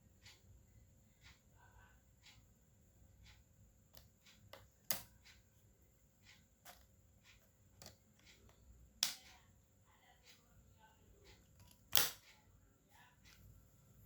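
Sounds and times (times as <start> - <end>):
hands clicking laptop parts: 4.0 - 5.2, 7.8 - 9.2, 11.6 - 12.2.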